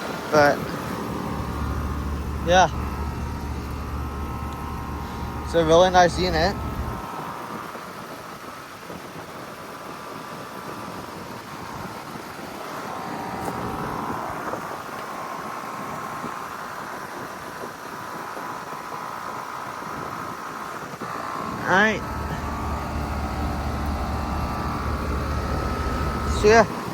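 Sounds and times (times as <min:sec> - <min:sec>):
faint hum: 0:00.0 - 0:07.8, 0:11.4 - 0:16.6, 0:21.0 - 0:26.9
heat pump fan rushing: 0:00.0 - 0:26.9.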